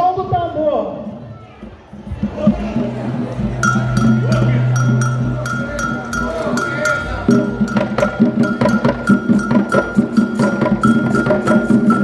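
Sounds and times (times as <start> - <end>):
hand drums: 2.0 - 12.0
metal bell struck: 3.1 - 12.0.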